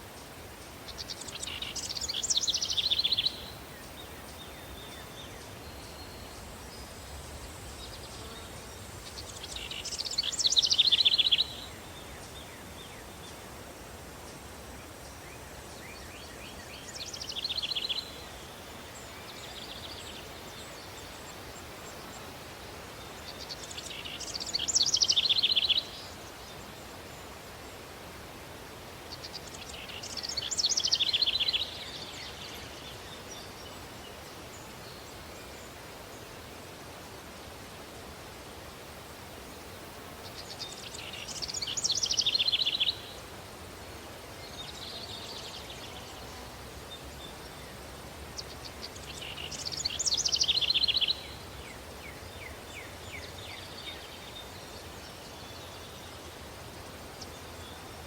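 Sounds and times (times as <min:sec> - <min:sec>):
outdoor country ambience: 0:00.0 - 0:58.0
songbird rapid trilled song: 0:00.9 - 0:06.2, 0:48.4 - 0:51.4.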